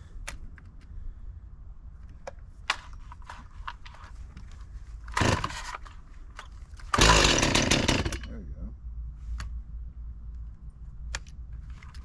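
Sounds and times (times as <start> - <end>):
chainsaw handling clicks and knocks: 2.0 - 8.3
chainsaw engine starting: 5.1 - 5.9, 6.9 - 8.3.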